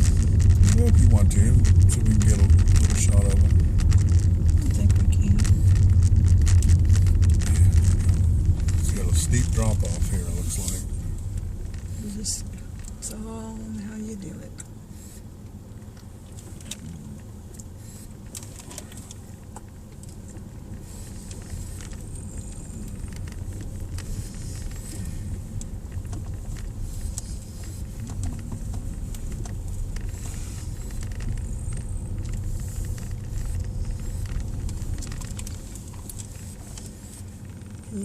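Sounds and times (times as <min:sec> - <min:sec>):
wind buffeting microphone: 0:00.0 - 0:13.0
vehicle engine running: 0:00.0 - 0:38.0
light clicks and rattles: 0:15.8 - 0:38.0.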